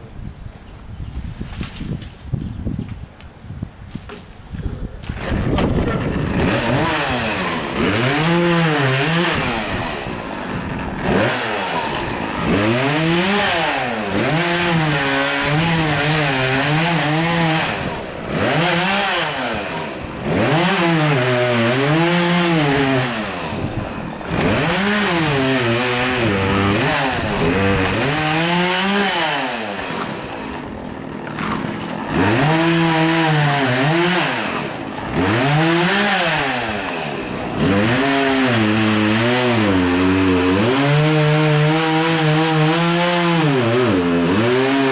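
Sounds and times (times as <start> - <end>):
chainsaw starting and revving: 5.0 - 44.9.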